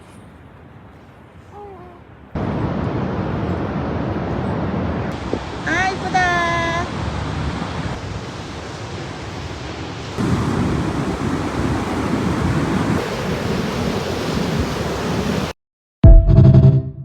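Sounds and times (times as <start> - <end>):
ocean surf washing ashore: 2.3 - 15.6
wind buffeting microphone: 10.2 - 15.5.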